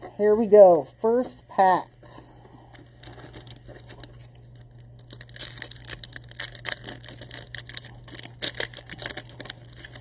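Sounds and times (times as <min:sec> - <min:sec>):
wrapper crinkling and tearing: 0:02.7 - 0:10.0
wrapper snapping: 0:03.0 - 0:10.0.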